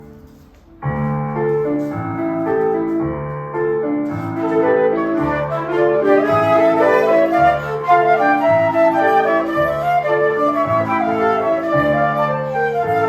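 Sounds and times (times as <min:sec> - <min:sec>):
piano accompaniment: 0:00.0 - 0:13.0
flute melody: 0:03.7 - 0:13.0.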